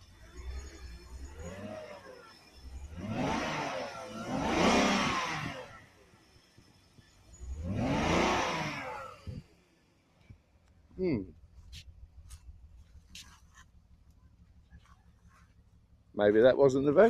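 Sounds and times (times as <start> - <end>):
car engine revving: 0.0 - 6.4, 7.0 - 9.7.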